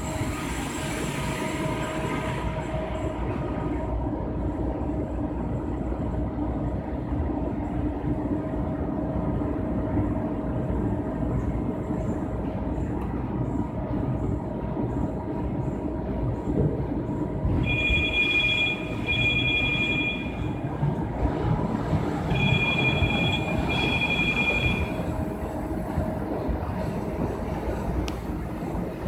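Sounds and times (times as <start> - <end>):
printing press mechanical rumble: 0.0 - 29.0
long electronic beeps: 17.6 - 20.6, 22.3 - 25.1.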